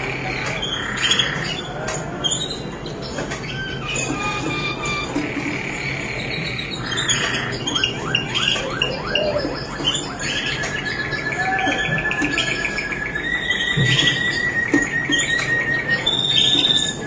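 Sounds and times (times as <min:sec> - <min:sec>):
canary singing trills: 0:00.0 - 0:17.0.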